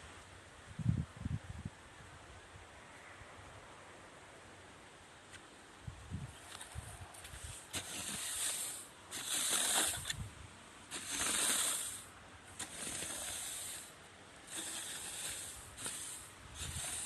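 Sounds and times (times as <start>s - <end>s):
rice being raked: 7.2s - 17.0s.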